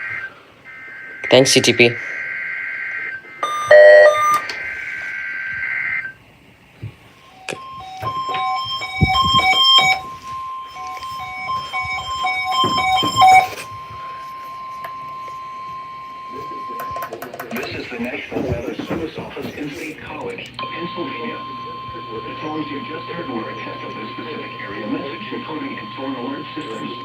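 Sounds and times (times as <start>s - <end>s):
steady warning alarm tone: 0.0s - 27.0s
short loud tone burst: 3.4s - 4.7s, 7.2s - 17.1s
stepped electronic beeping: 3.4s - 4.8s, 7.1s - 27.0s
warbling digital header bursts: 7.2s - 20.0s.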